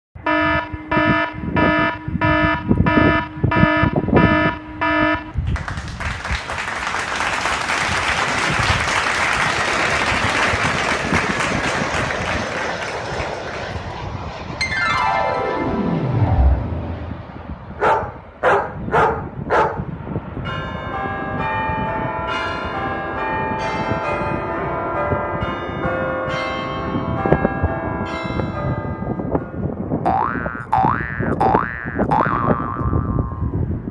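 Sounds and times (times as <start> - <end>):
dog barks: 17.8 - 19.8
church bells ringing: 20.3 - 30.0.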